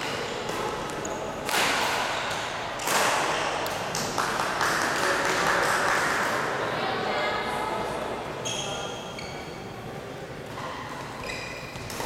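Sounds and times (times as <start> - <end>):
racket hits echoing: 0.0 - 6.4
background hubbub: 0.0 - 12.0.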